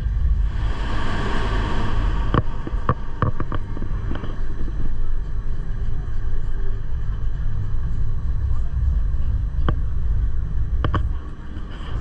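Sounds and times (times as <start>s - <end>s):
electric train rumbling: 0.0s - 12.0s
hiss: 0.4s - 4.3s.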